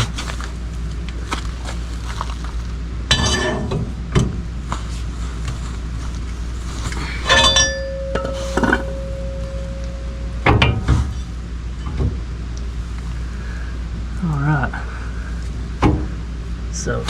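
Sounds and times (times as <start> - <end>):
pry bar clanking on steel: 3.1 - 3.9, 7.2 - 9.3.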